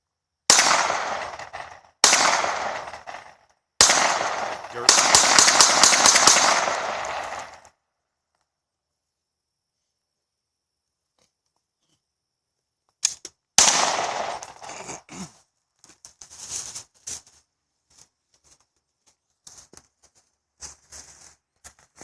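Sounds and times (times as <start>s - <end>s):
gunshot with echo: 0.5s - 7.6s, 13.6s - 14.7s.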